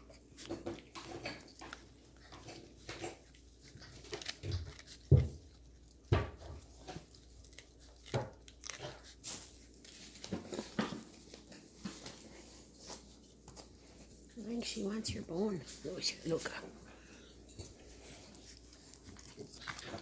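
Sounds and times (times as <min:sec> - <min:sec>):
puppies chewing and scuffling: 0:00.0 - 0:20.0.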